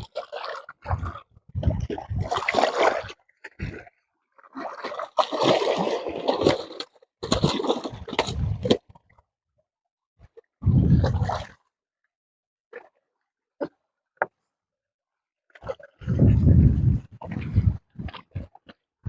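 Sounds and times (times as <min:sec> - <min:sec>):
fish thrashing splashing water: 0:00.0 - 0:03.9, 0:04.5 - 0:08.8.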